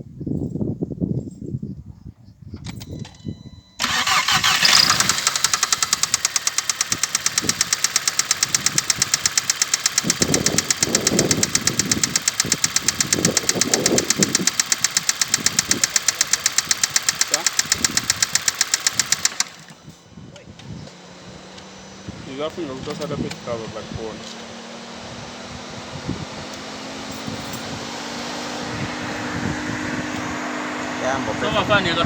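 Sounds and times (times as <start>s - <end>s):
fast even engine ticking: 3.8s - 19.8s
car engine starting and idling: 3.8s - 32.0s.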